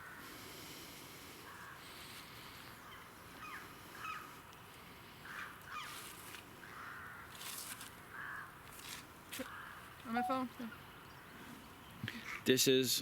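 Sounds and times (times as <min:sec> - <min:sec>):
crows cawing: 0:00.0 - 0:00.3, 0:01.4 - 0:01.9, 0:02.8 - 0:04.4, 0:05.2 - 0:06.0, 0:06.6 - 0:07.4, 0:08.0 - 0:08.6, 0:09.4 - 0:10.0.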